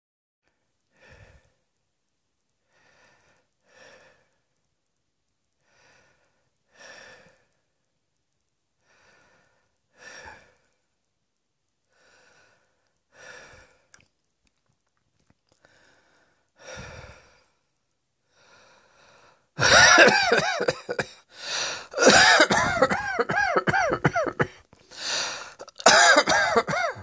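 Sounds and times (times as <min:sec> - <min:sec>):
person breathing slowly: 0:00.9 - 0:01.7, 0:02.6 - 0:04.5, 0:05.6 - 0:07.8, 0:08.8 - 0:10.8, 0:11.9 - 0:14.0, 0:15.5 - 0:19.6, 0:21.2 - 0:22.0, 0:24.8 - 0:25.7.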